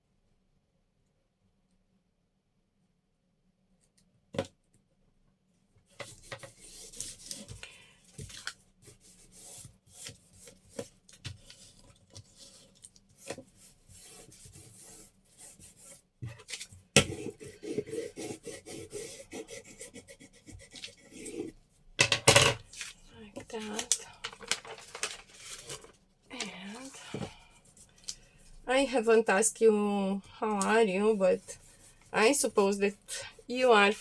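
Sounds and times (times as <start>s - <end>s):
paper and tape rustling: 6.0s - 18.5s, 22.6s - 28.7s.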